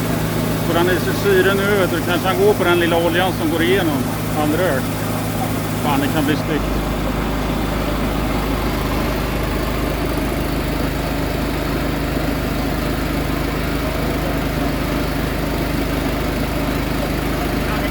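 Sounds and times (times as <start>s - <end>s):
engine running steadily: 0.0s - 17.9s.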